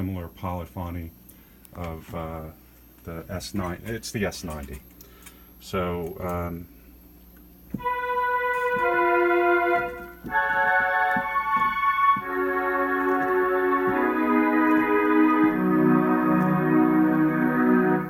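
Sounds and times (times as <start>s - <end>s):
keyboard playing held chords: 7.8s - 18.0s.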